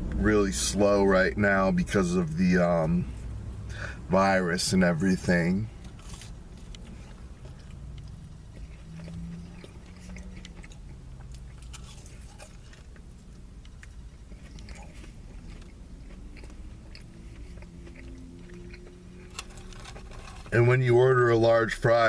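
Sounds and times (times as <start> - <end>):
person chewing fries: 5.1 - 20.6.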